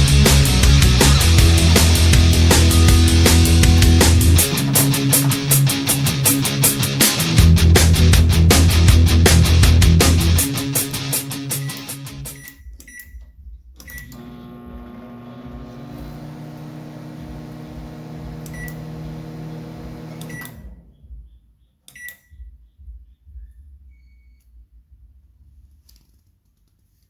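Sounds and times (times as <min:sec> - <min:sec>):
microwave humming: 0:00.0 - 0:10.2, 0:13.9 - 0:20.8
microwave click: 0:01.1 - 0:06.8, 0:13.9 - 0:20.6
microwave beeps: 0:11.5 - 0:13.2, 0:13.9 - 0:20.7, 0:21.9 - 0:22.4.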